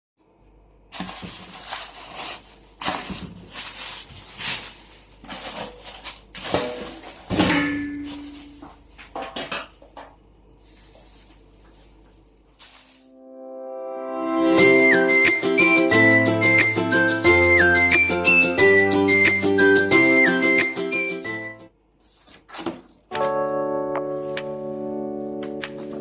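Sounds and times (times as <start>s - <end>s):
packaging rustling and crinkling: 0.9s - 9.3s, 10.6s - 13.1s.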